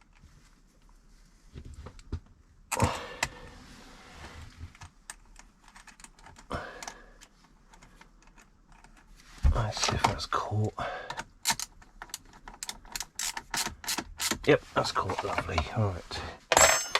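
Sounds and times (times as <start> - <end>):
metal parts clicking and rattling: 5.1 - 6.9, 11.4 - 14.4.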